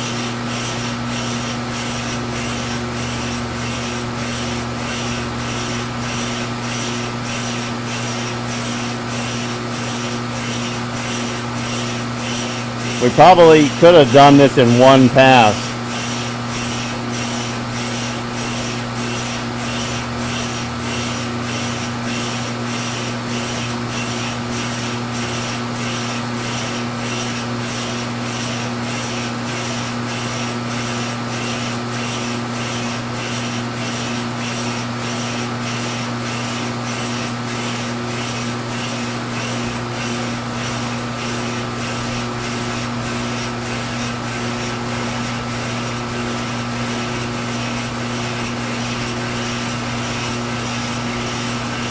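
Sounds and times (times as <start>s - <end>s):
cutting tool scraping fiberglass: 0.1s - 13.0s, 15.9s - 51.9s
shop vacuum humming: 1.0s - 25.4s, 38.9s - 51.9s.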